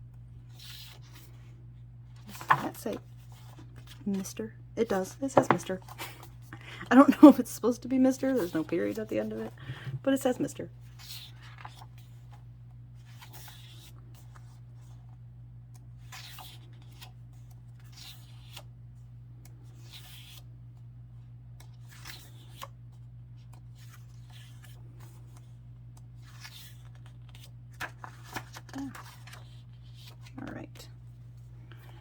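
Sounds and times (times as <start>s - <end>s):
paper pages rustling: 2.1s - 4.1s, 10.9s - 12.4s, 21.6s - 30.4s.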